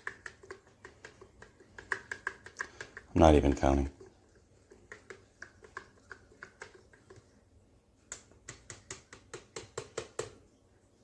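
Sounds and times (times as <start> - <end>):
paddle clicking against plastic chamber: 0.0 - 3.2.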